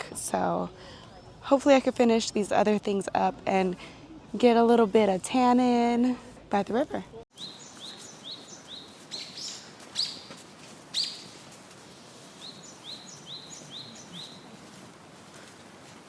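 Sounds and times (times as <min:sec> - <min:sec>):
birds chirping: 0:06.5 - 0:10.3, 0:12.4 - 0:14.6.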